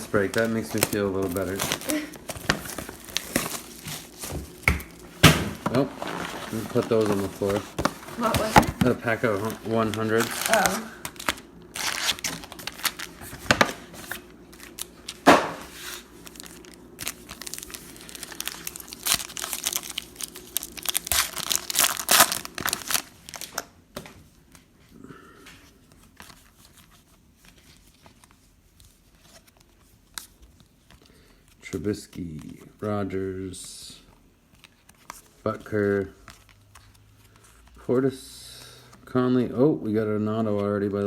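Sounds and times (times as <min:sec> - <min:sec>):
faint handling: 0:00.0 - 0:10.8
wrappers tearing and crinkling: 0:00.0 - 0:23.8.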